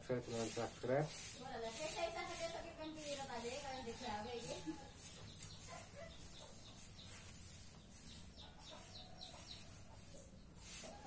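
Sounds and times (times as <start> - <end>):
faint chickens clucking: 2.4 - 11.0.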